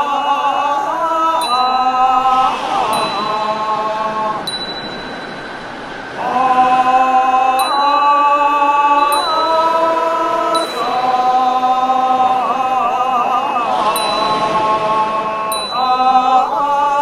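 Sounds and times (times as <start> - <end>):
choir-like held chords: 0.0 - 17.0
hissing wind effect: 0.0 - 17.0
small bell ringing: 4.5 - 5.3.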